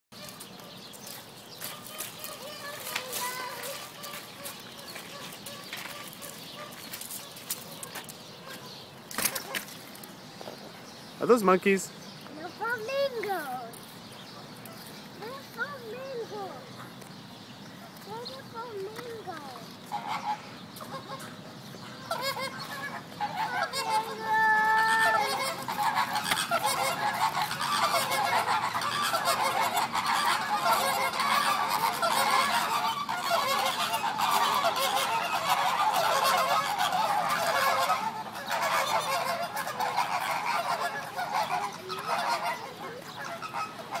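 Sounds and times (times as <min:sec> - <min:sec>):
flamingos honking: 0:01.6 - 0:09.8, 0:18.1 - 0:44.0.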